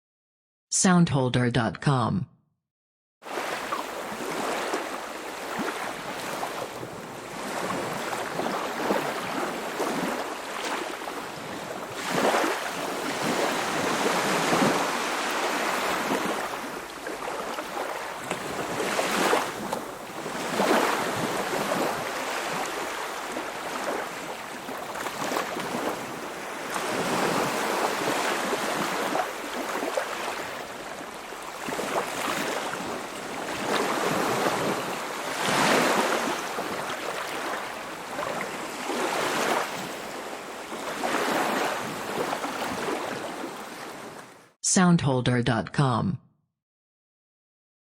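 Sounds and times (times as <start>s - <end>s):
waves splashing against shore: 3.2s - 44.4s.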